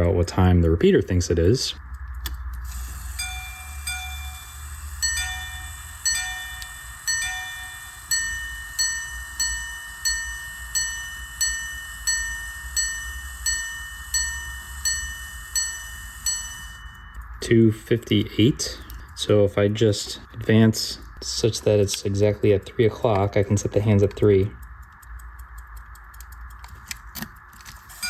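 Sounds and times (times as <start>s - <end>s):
pocket watch chiming: 0.9s - 20.8s, 25.8s - 28.0s.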